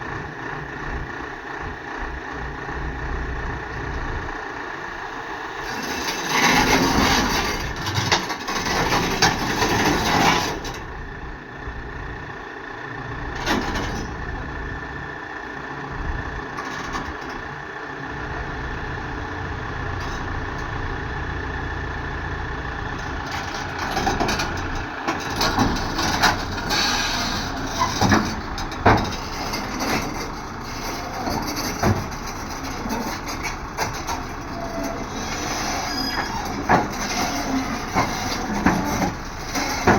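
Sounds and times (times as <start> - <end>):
excavator diesel engine running: 0.0 - 39.9
knocks and clatter: 23.0 - 35.0.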